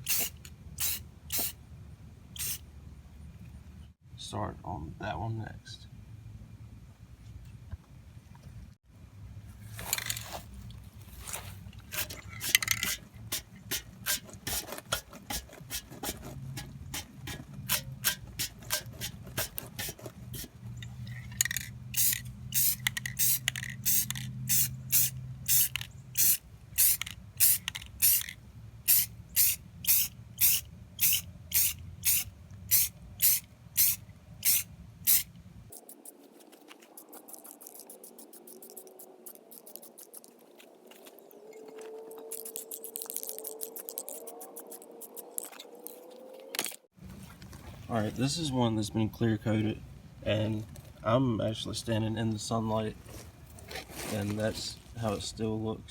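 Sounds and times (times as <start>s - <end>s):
spray can hissing bursts: 0.0s - 1.6s, 2.4s - 2.6s, 16.9s - 20.5s, 21.9s - 28.3s, 28.9s - 35.8s.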